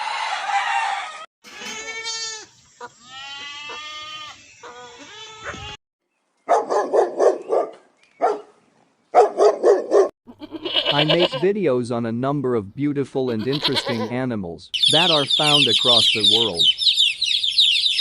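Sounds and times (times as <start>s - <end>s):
goat or sheep bleating: 1.5s - 5.8s, 10.3s - 11.5s, 13.2s - 14.2s
dog barking: 6.5s - 10.1s.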